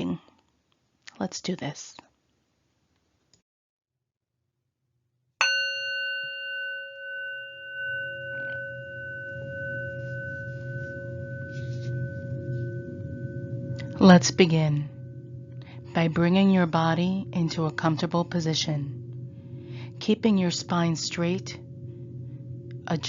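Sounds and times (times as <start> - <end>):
meditation bell ringing: 5.4 - 23.0
low hum: 7.1 - 23.0.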